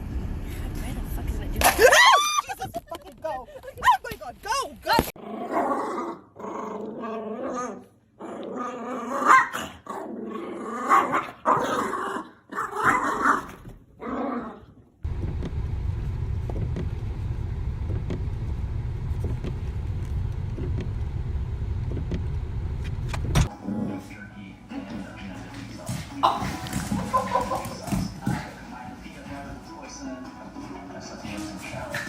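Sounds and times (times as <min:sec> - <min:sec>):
dog growling and barking: 0:05.2 - 0:14.8
steady low rumble: 0:15.0 - 0:23.5.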